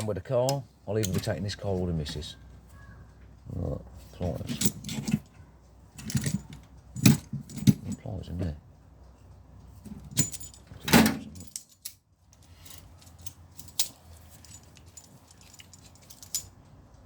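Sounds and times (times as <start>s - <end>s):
metal hand tools clinking: 4.3s - 5.4s, 9.9s - 16.7s.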